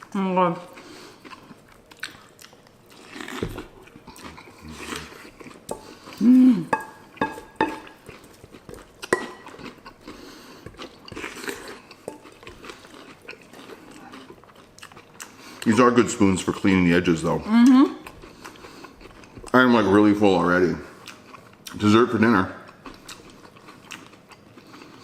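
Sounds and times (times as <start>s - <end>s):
person humming: 6.2s - 6.8s, 17.5s - 18.0s.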